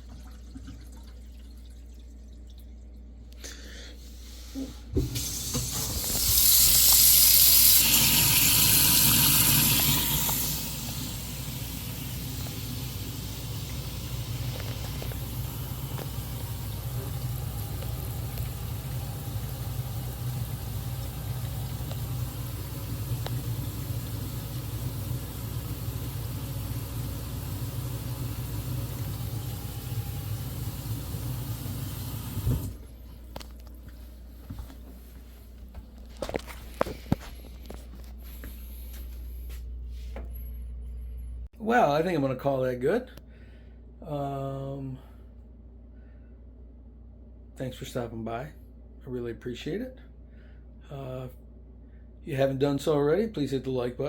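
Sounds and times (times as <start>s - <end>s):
garbage disposal motor humming: 4.9s - 34.7s
faucet running water: 5.0s - 33.0s.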